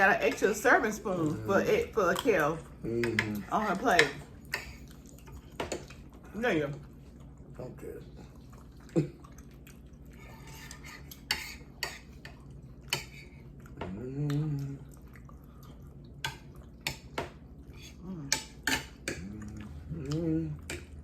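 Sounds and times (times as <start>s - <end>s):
short humming voice: 13.8s - 14.8s, 19.2s - 20.7s.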